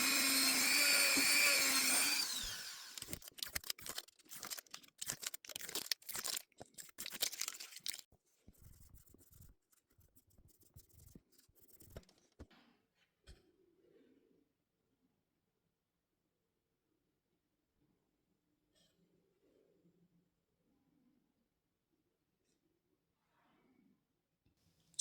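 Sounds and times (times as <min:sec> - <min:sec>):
power tool whining: 0:00.0 - 0:03.2
rubbing strokes: 0:06.8 - 0:12.4.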